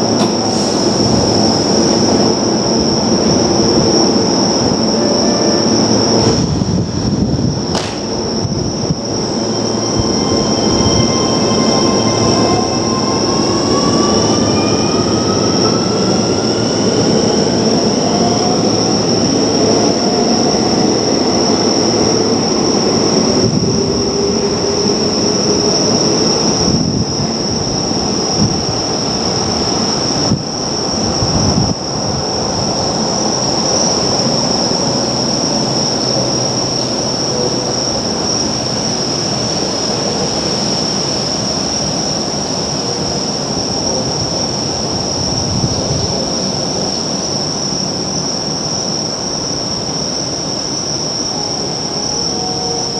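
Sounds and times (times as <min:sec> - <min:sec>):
electric train motor whine: 0:00.0 - 0:30.0
brief knocks: 0:07.8 - 0:08.6.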